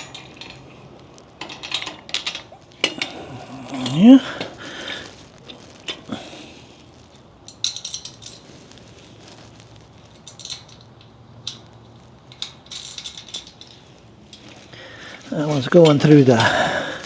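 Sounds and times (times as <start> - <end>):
metal hardware clinking: 0.0 - 6.0, 7.5 - 8.4, 10.1 - 17.0
handling noise: 0.0 - 17.0.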